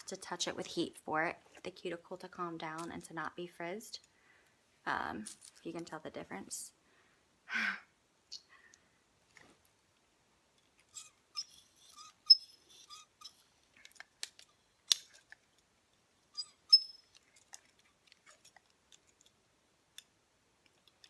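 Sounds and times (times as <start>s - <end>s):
person breathing: 4.1s - 4.7s, 6.8s - 7.9s.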